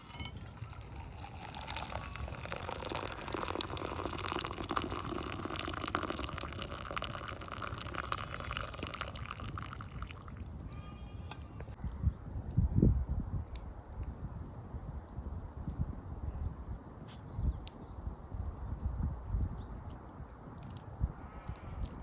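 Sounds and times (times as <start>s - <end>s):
liquid dripping and trickling: 0.1s - 11.4s.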